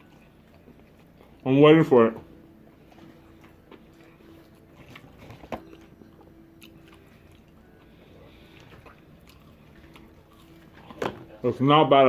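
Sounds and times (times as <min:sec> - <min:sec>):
person chewing: 0:02.8 - 0:11.4.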